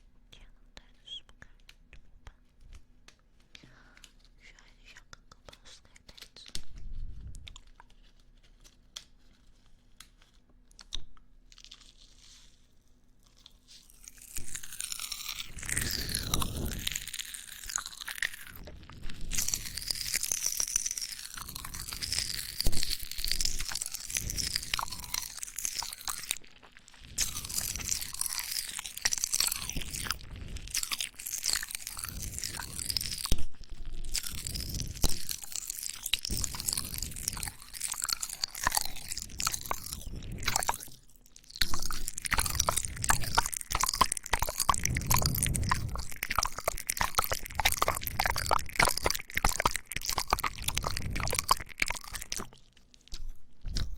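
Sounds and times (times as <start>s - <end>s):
popping candy crackling: 5.1s - 53.9s
wet mouth sounds: 13.2s - 53.9s.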